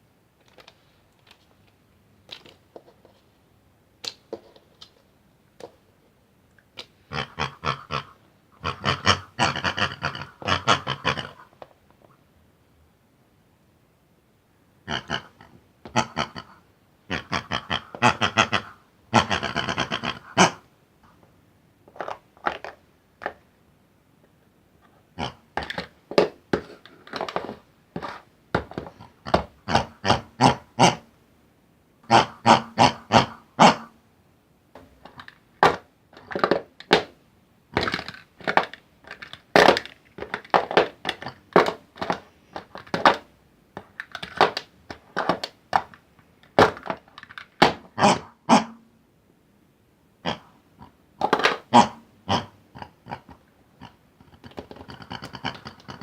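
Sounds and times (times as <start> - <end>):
pig oinking and grunting: 7.1 - 11.5, 14.8 - 20.6, 25.2 - 25.7, 28.9 - 31.1, 32.1 - 33.9, 47.9 - 48.8, 50.2 - 51.0, 51.6 - 56.0.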